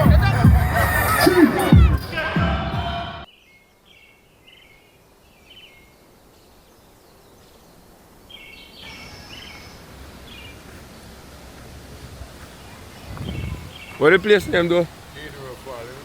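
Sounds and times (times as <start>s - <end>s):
birds chirping: 0.0s - 16.0s
outdoor hiss: 3.2s - 16.0s.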